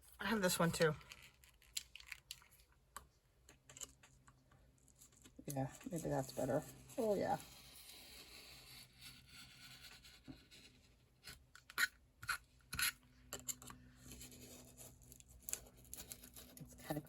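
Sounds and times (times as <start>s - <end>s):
vellum crinkling: 0.1s - 7.7s.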